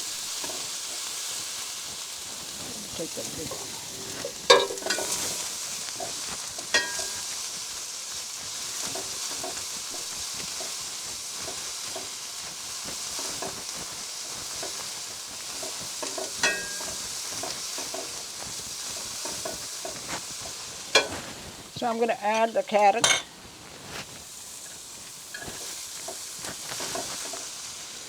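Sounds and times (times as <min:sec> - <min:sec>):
vegetables sizzling in hot oil: 0:00.0 - 0:28.0
utensil scraping a pan: 0:02.3 - 0:28.0
metal clinks against pan: 0:04.5 - 0:05.2, 0:06.7 - 0:07.3, 0:16.0 - 0:17.0, 0:21.0 - 0:21.2, 0:23.0 - 0:23.3.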